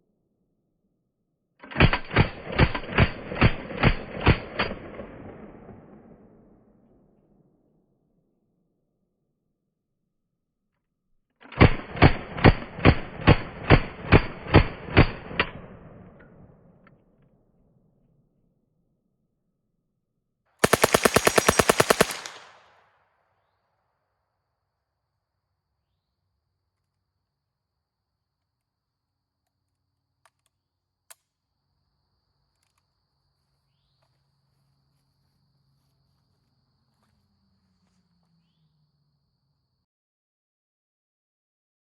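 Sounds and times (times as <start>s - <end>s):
submachine gun single shots: 1.6s - 6.0s, 11.5s - 15.8s, 20.6s - 22.8s
gunshot echo: 20.6s - 22.6s.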